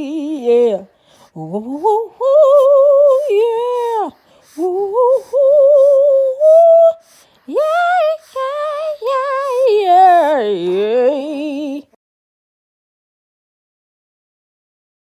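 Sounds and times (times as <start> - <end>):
woman singing wordless notes: 0.0 - 12.0.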